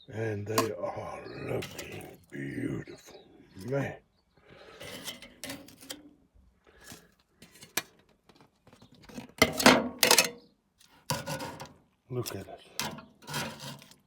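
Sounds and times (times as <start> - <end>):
metal utensils and dishes clattering: 4.8 - 6.1, 9.1 - 10.4, 11.1 - 14.0.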